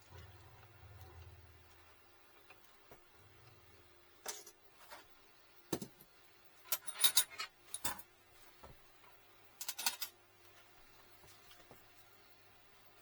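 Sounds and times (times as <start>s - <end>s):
small metal objects clinking: 6.6s - 8.1s, 9.6s - 10.2s.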